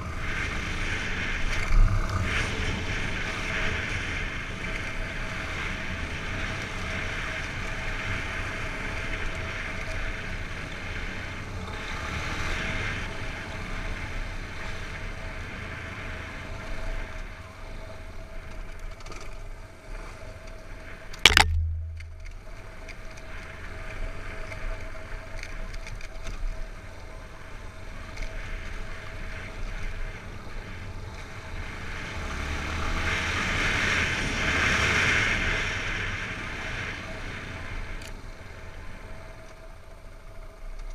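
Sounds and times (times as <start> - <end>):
sharp knock: 21.3 - 22.3.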